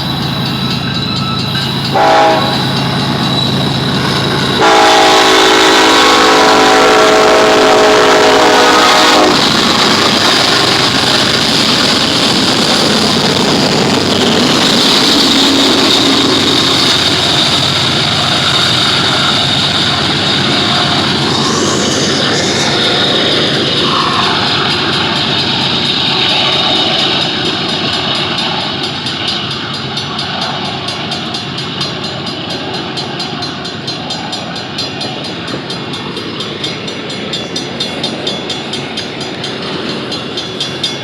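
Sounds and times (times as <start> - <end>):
diesel engines droning: 0.0 - 41.0
train wheels rumbling on rails: 0.0 - 41.0
locomotive air horn: 1.9 - 2.8, 4.6 - 9.5, 15.4 - 16.6, 23.8 - 24.7.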